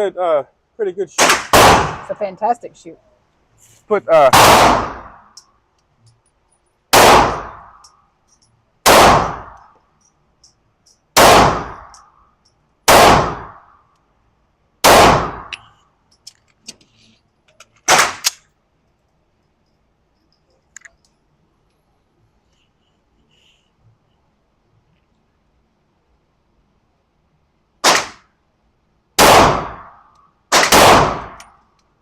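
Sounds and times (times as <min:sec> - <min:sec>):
handgun shots: 0:01.2 - 0:02.1, 0:04.4 - 0:05.2, 0:07.0 - 0:07.8, 0:08.9 - 0:09.6, 0:11.2 - 0:11.9, 0:12.9 - 0:13.6, 0:14.8 - 0:15.5, 0:17.9 - 0:18.4, 0:27.8 - 0:28.2, 0:29.2 - 0:31.5.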